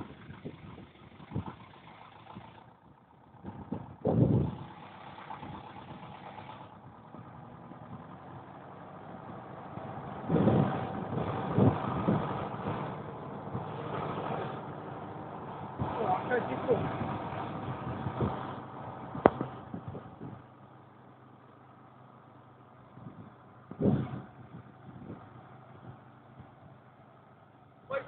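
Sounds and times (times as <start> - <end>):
tractor diesel engine running: 0.0 - 28.0.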